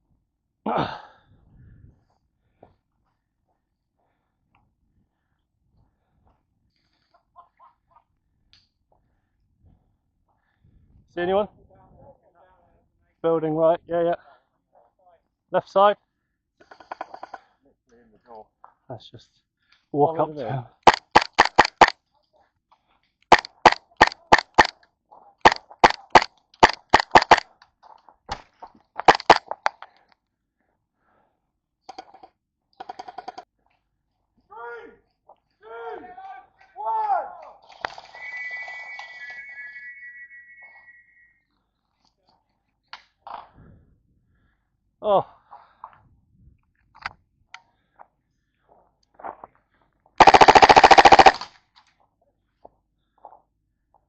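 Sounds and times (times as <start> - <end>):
airsoft gun shots: 20.9 - 21.9, 23.3 - 24.7, 25.4 - 27.4, 29.0 - 29.4, 50.2 - 51.5.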